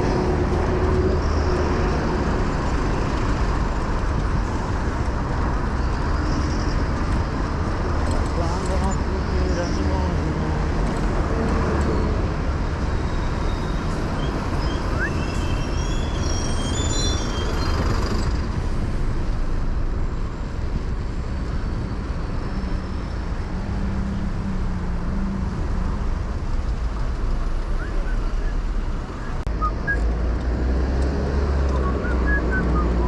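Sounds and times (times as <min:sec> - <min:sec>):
engine hum: 0:00.0 - 0:33.0
traffic rumble: 0:00.0 - 0:33.0
vehicle and bus engines: 0:00.0 - 0:33.0
short high-pitched squeaks: 0:14.6 - 0:18.3.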